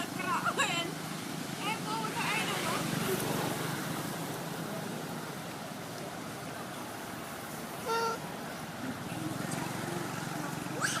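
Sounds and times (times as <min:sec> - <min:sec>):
monkey high call: 0:07.8 - 0:08.2, 0:10.8 - 0:11.0.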